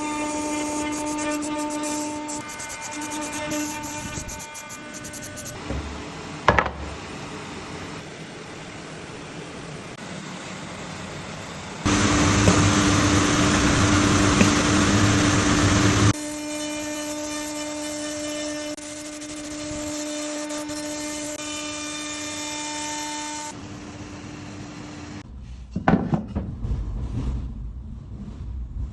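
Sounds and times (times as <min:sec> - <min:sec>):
router spindle whine: 0:11.9 - 0:16.1
router cutting wood: 0:11.9 - 0:25.2.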